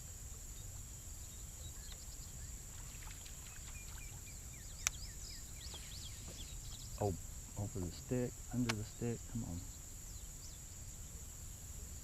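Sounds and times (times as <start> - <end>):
insects droning: 0.0 - 12.0
bird chirps: 0.5 - 11.4
sharp click: 8.6 - 8.8.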